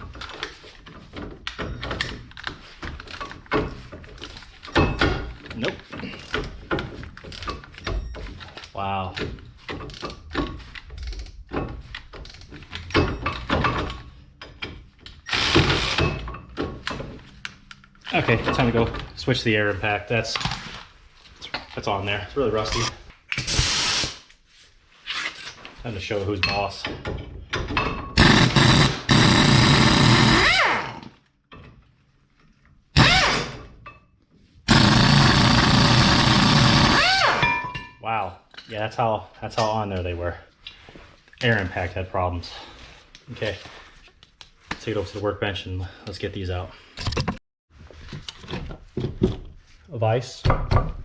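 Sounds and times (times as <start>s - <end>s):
impact wrench hammering: 15.3s - 16.2s, 28.2s - 31.0s, 33.0s - 33.6s, 34.7s - 37.7s.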